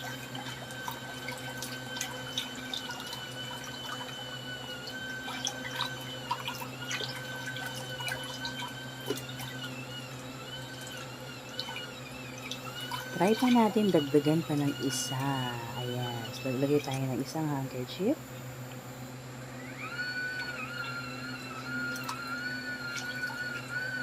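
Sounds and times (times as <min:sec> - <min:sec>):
water sloshing and splashing: 0:00.0 - 0:09.8, 0:10.5 - 0:17.0
motor whine: 0:00.0 - 0:24.0.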